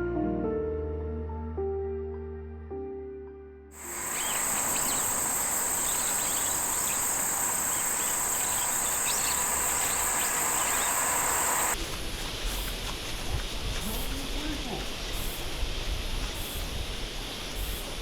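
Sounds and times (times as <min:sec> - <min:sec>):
crickets chirping: 0:03.8 - 0:11.8
background hiss: 0:03.8 - 0:18.0.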